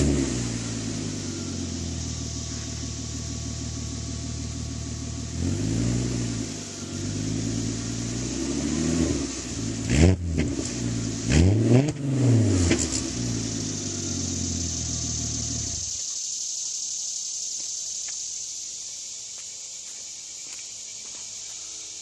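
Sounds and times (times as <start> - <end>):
car engine idling and revving: 0.0 - 16.4.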